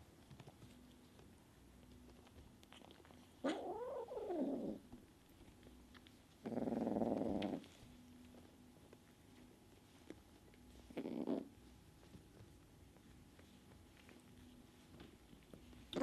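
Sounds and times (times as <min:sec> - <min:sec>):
kitten growling: 0:03.4 - 0:04.8, 0:06.4 - 0:07.7, 0:10.9 - 0:11.5.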